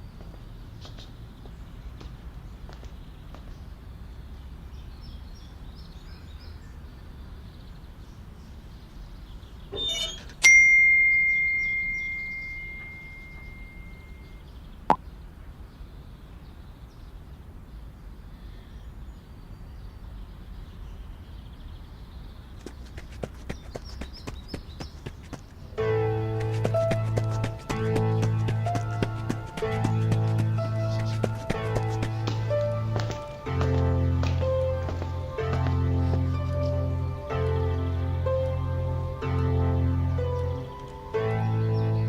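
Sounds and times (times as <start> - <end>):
small bell ding: 9.8 - 14.4
faint bird-like chirps: 11.2 - 14.4.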